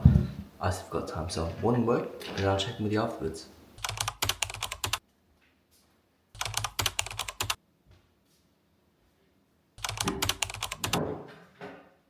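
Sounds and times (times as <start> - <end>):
fast typing on keyboard: 3.8 - 5.0, 6.4 - 7.6, 9.8 - 11.0.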